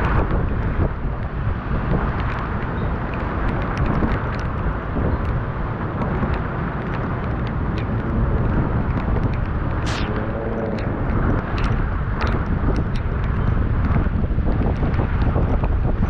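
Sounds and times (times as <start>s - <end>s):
wind buffeting microphone: 0.0s - 16.0s
sharp ticks: 2.0s - 16.0s
brief hiss: 9.8s - 10.7s.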